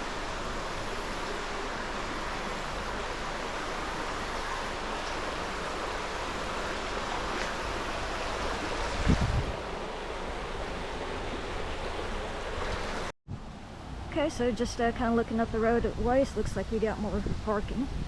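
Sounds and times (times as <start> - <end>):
wind rush: 7.6 - 13.5.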